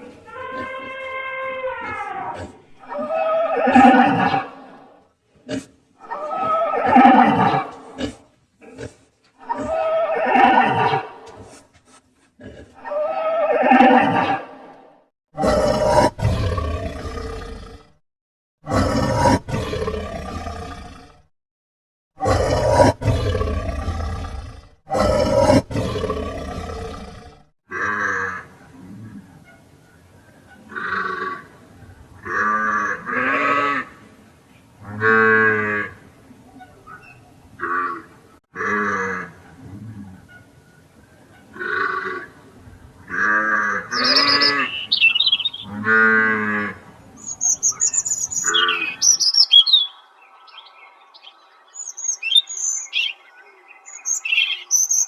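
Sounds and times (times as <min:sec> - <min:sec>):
big cat roaring: 0:15.4 - 0:18.0, 0:18.6 - 0:21.2, 0:22.2 - 0:29.4, 0:37.6 - 0:40.2
birds chirping: 0:43.8 - 0:45.8, 0:47.1 - 0:55.0.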